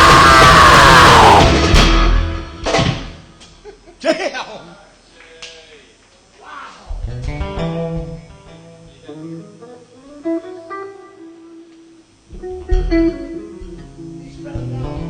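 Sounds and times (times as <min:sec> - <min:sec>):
low bass notes: 0:00.0 - 0:03.0, 0:12.3 - 0:13.8
guitar strumming and picking: 0:07.1 - 0:15.0.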